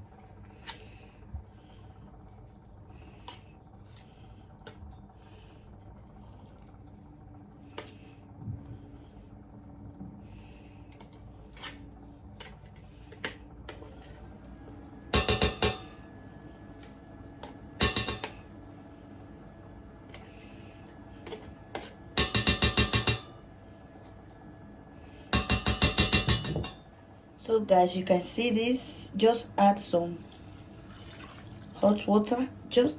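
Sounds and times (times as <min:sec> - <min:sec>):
low steady hum: 0:00.0 - 0:32.9
utensil clattering on cookware: 0:15.2 - 0:15.9, 0:17.8 - 0:18.4, 0:22.2 - 0:23.3, 0:25.4 - 0:26.8.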